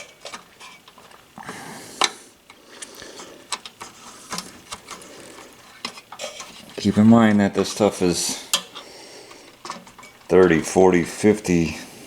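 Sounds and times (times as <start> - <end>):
screw turning scraping: 2.0 - 7.4.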